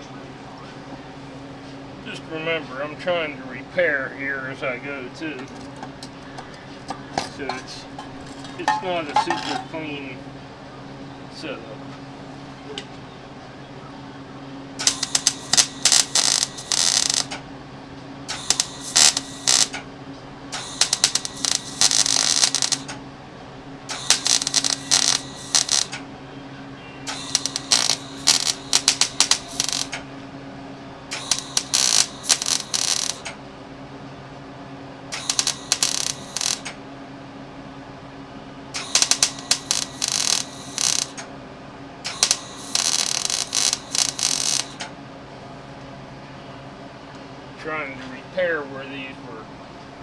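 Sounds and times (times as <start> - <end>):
welder humming: 14.3 - 33.8, 34.7 - 37.5, 38.1 - 41.3, 42.0 - 44.9
welding arc crackling: 14.8 - 17.5, 18.3 - 19.9, 20.5 - 23.0, 23.8 - 26.1, 27.0 - 30.1, 31.0 - 33.4, 35.1 - 36.8, 38.7 - 41.2, 42.0 - 44.9.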